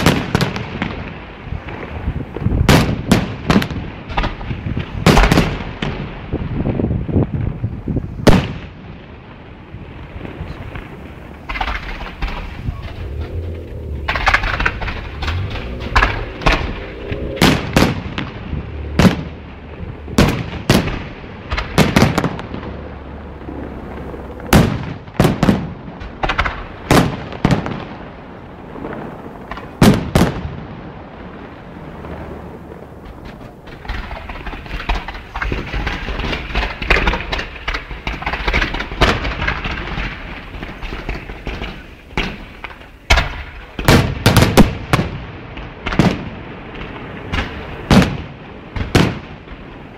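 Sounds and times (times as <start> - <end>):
fireworks bangs: 0.0 - 49.9
fireworks crackling hiss: 9.5 - 26.8, 30.9 - 44.6.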